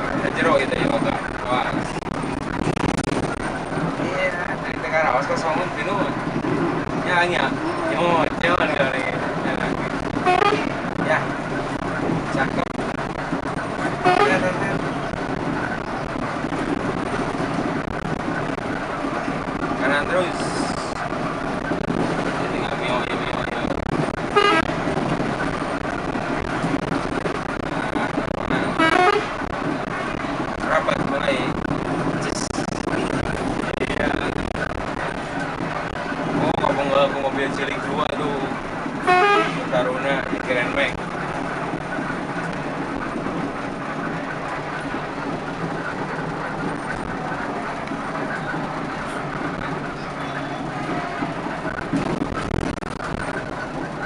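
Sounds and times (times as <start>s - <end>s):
heavy vehicle engine drone: 0.0s - 54.0s
passing road traffic: 0.0s - 54.0s
multi-tone bus horn: 10.1s - 10.8s, 13.9s - 14.7s, 24.2s - 24.8s, 28.6s - 29.5s, 39.0s - 39.9s
bus horn toot: 10.2s - 10.8s, 13.9s - 14.6s, 24.3s - 24.8s, 28.7s - 29.5s, 39.0s - 39.8s.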